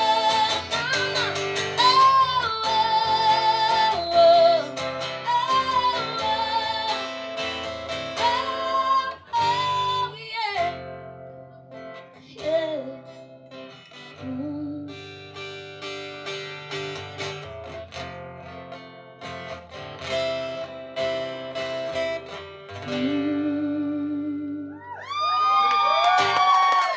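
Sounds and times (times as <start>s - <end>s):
woman singing: 0.0s - 15.1s, 22.8s - 25.0s
acoustic guitar playing: 0.0s - 25.0s.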